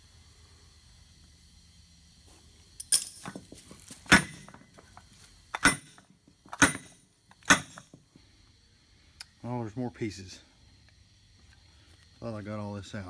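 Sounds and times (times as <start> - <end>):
metal-on-metal knocks: 2.9 - 4.9, 5.6 - 8.0.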